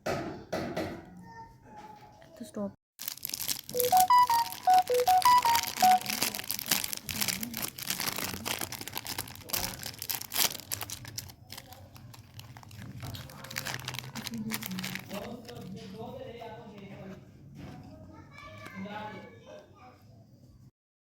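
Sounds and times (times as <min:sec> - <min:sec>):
chip bag crinkling: 0:03.0 - 0:16.1
short melodic notes: 0:03.8 - 0:06.4.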